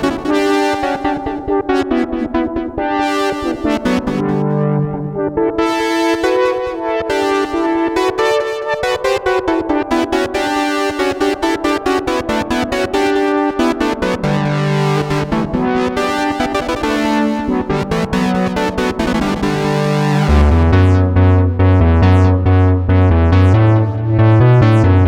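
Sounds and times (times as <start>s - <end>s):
held synthesizer chords: 0.0s - 25.0s
deep bass line: 20.1s - 25.0s.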